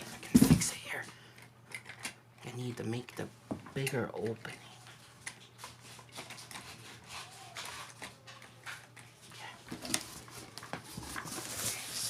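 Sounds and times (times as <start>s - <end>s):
cardboard crunching and scraping: 9.8s - 12.0s.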